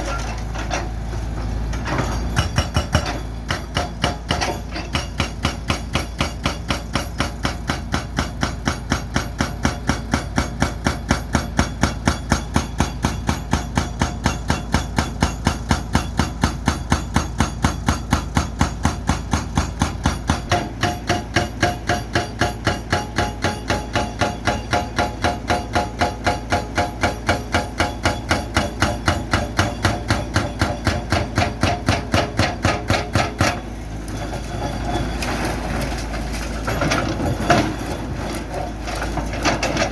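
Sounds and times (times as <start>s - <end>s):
hydraulic breaker hammering concrete: 2.0s - 33.7s.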